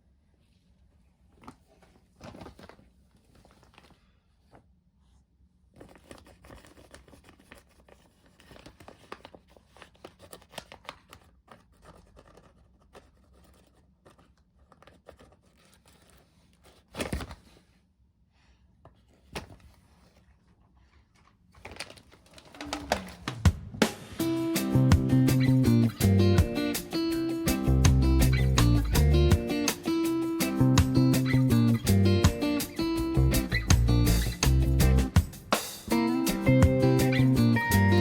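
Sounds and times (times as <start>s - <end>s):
plastic bag rustling and crinkling: 19.6s - 23.8s.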